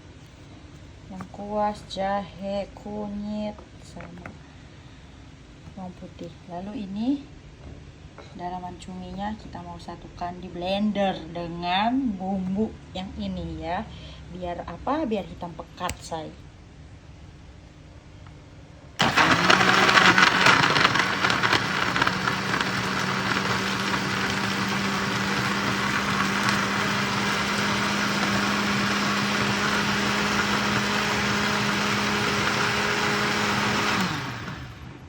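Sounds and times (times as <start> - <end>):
electric blender grinding: 19.0 - 35.0.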